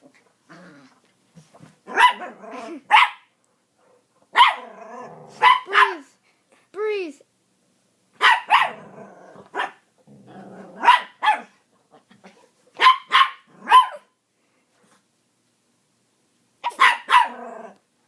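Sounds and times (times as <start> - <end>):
dog growling: 0.0 - 1.1, 2.2 - 2.9, 4.6 - 5.4, 8.7 - 10.9, 17.2 - 17.8
dogs barking: 1.9 - 3.3, 4.3 - 4.7, 5.4 - 6.0, 8.2 - 8.8, 10.8 - 11.6, 12.8 - 14.1, 16.6 - 17.4.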